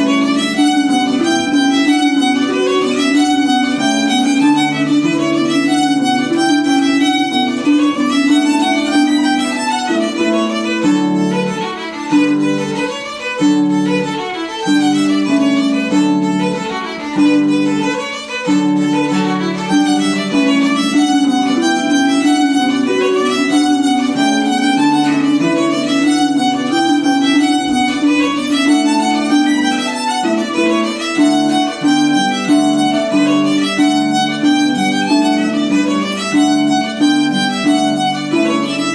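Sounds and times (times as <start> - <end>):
violin playing dance tune: 0.0 - 38.9.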